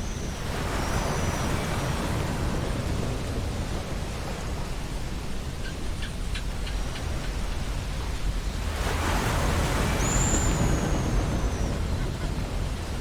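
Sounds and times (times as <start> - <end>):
ocean surf washing: 6.8 - 13.0.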